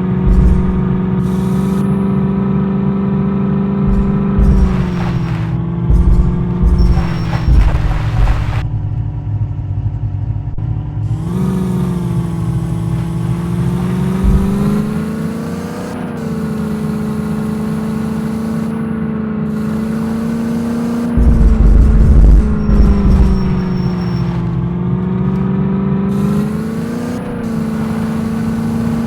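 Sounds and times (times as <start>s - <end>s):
low rumbling thumps: 0.0s - 2.8s, 3.6s - 11.4s, 12.0s - 15.2s, 21.2s - 25.4s
engine running under load: 0.0s - 29.0s.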